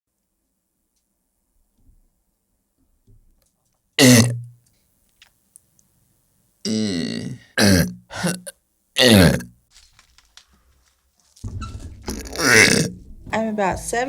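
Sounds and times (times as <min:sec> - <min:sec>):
person making short loud sounds: 0:04.0 - 0:04.5, 0:06.7 - 0:09.5, 0:12.1 - 0:12.9.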